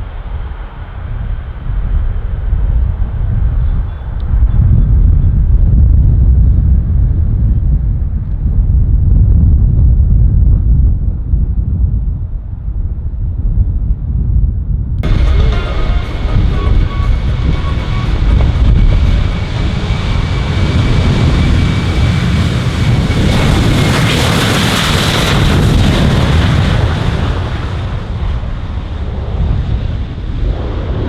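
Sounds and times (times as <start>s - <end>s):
wind buffeting microphone: 0.8s - 31.0s
military aircraft flying past: 15.0s - 31.0s.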